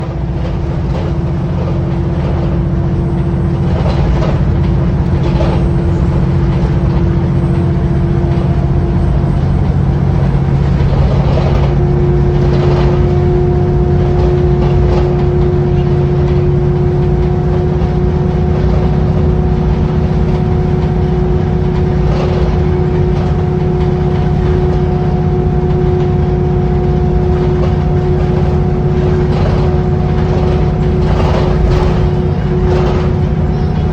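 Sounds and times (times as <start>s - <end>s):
bus engine hum and whine: 0.0s - 33.9s.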